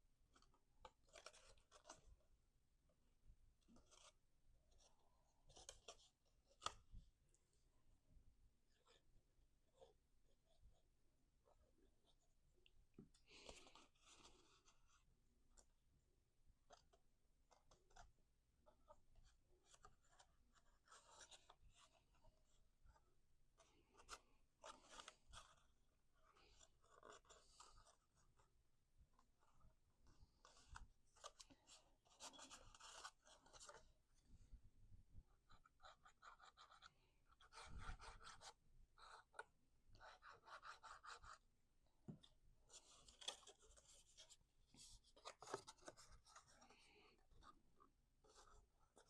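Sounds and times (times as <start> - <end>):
cardstock rustling and folding: 0.3 - 2.2, 16.6 - 34.3, 42.1 - 49.0
cardstock rustling and crinkling: 42.1 - 49.0.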